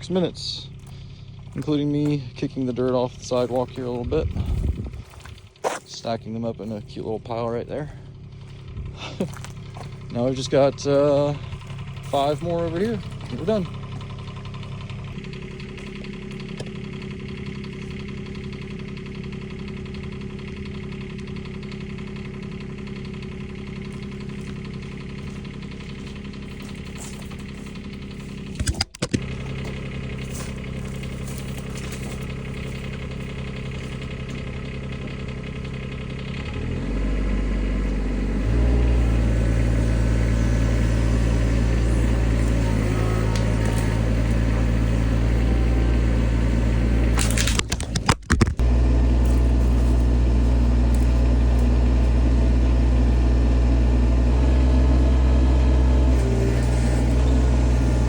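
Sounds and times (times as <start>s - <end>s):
excavator diesel engine running: 0.0s - 58.0s
clicks: 28.4s - 29.8s.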